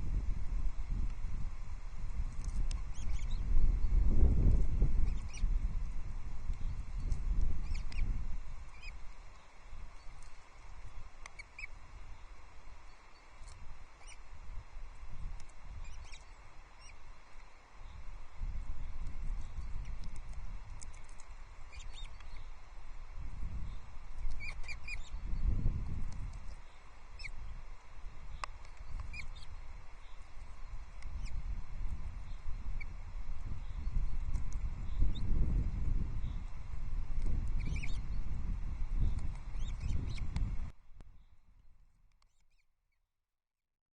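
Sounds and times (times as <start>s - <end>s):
wind buffeting microphone: 0.0s - 12.5s, 13.6s - 16.9s, 17.8s - 41.1s
faint high-pitched chirps: 2.4s - 4.0s, 6.6s - 10.5s, 11.2s - 14.3s, 15.2s - 17.2s, 17.8s - 22.6s, 23.5s - 27.6s, 28.2s - 31.5s, 37.2s - 38.4s, 39.0s - 40.4s, 42.2s - 42.7s.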